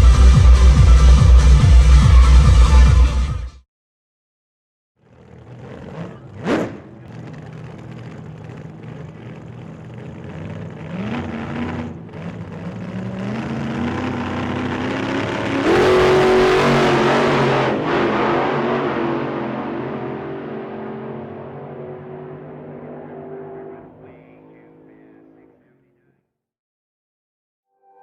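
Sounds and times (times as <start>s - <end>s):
engine revving up: 5.0s - 25.4s.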